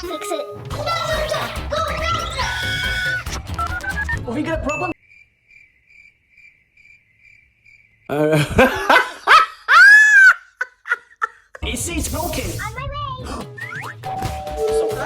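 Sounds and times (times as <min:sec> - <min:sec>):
crickets chirping: 0:05.0 - 0:08.3.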